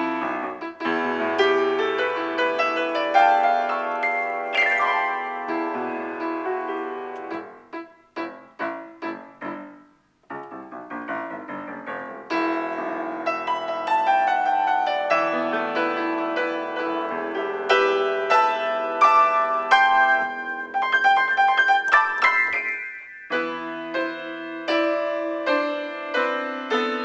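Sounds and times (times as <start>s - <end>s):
piano playing: 0.0s - 27.0s.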